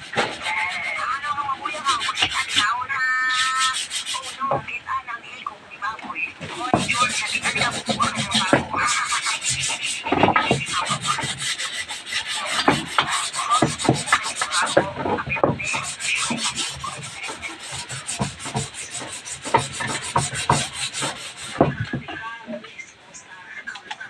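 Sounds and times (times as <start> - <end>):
hand tool scraping wood: 0.0 - 4.7, 6.4 - 22.2.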